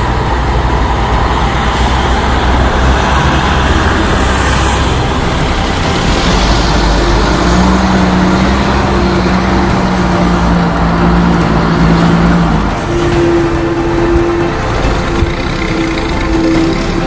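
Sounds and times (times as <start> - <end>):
road traffic rushing: 0.0 - 17.0.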